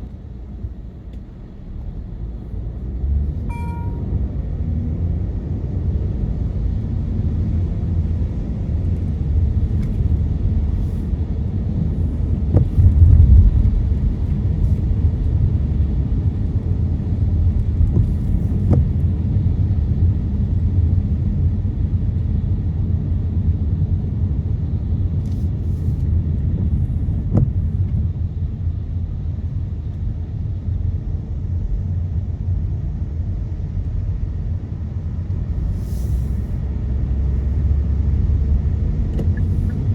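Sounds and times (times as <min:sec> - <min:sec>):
road and tyre rumble: 0:00.0 - 0:39.9
car bump: 0:27.3 - 0:27.7.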